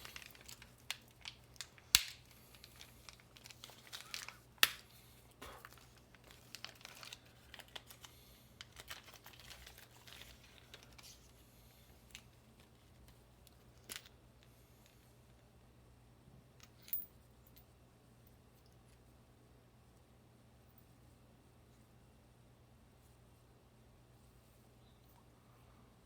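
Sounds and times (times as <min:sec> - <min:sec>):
plastic packaging crinkling: 0:00.0 - 0:11.4.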